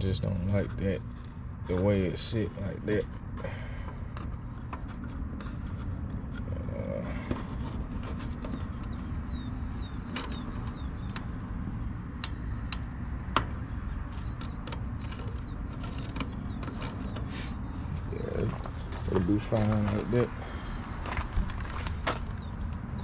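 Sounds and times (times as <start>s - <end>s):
low steady rumble: 0.0s - 23.0s
sharp clicks: 12.2s - 17.3s.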